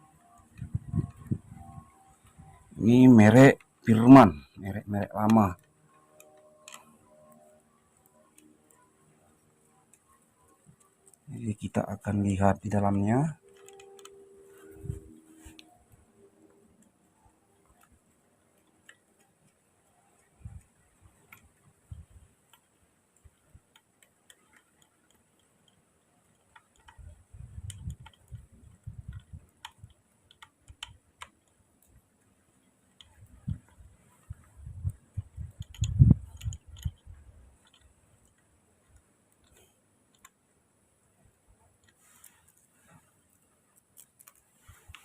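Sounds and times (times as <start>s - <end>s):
light metallic clicks: 12.6s - 40.4s.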